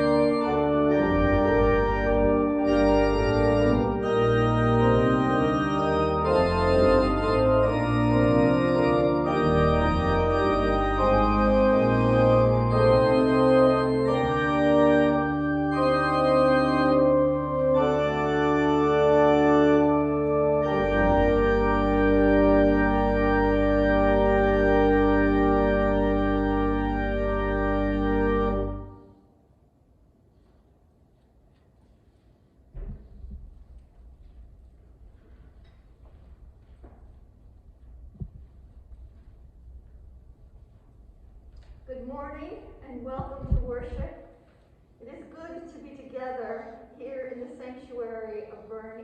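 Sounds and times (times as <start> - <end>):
church organ chords: 0.0 - 29.2.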